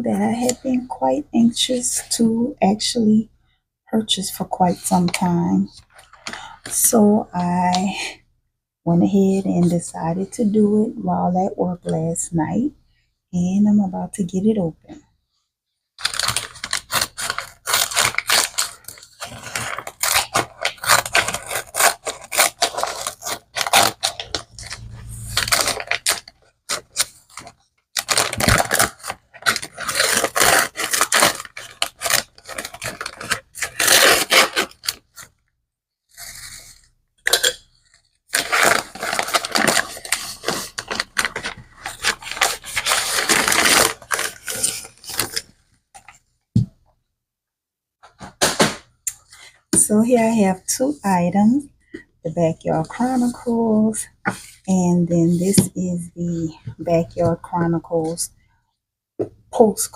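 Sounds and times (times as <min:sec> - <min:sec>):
packaging scraped torn and rustled: 0:16.0 - 0:35.4, 0:36.1 - 0:46.2.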